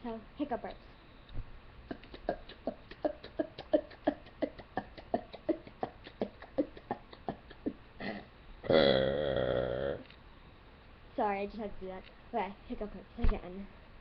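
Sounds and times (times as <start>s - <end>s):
person hiccuping: 1.9s - 10.0s.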